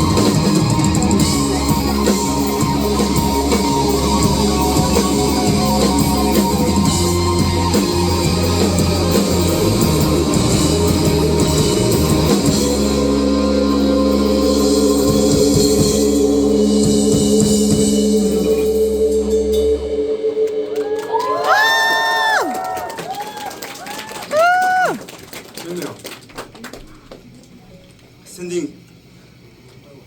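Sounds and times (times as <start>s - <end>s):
rock band playing: 0.0s - 20.4s.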